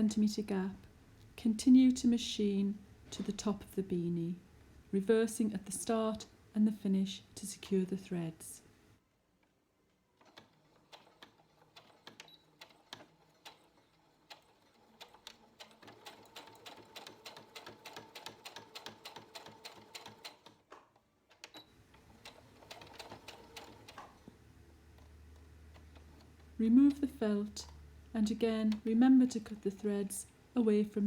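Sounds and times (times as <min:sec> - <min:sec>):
sewing machine stitching: 0:10.2 - 0:30.1.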